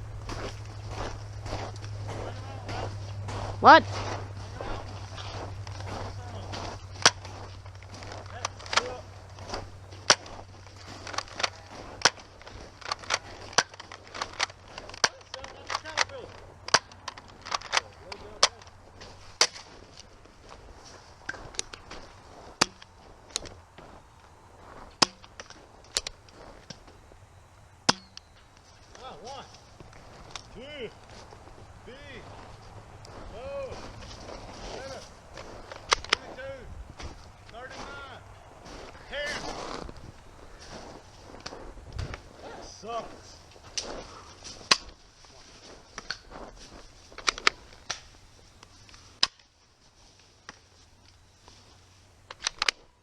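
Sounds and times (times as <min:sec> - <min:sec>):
toy dart pistols firing: 0:27.8 - 0:28.3
toy pistol plastic clicks: 0:52.3 - 0:52.8.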